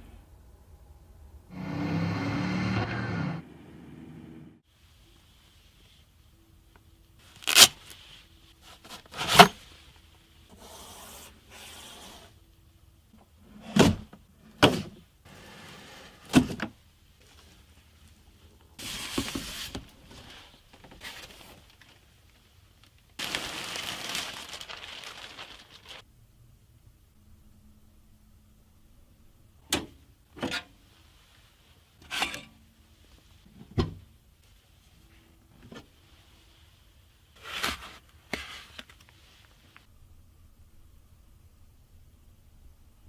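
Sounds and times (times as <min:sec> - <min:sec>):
packaging rubbing and scraping: 0:23.2 - 0:26.0.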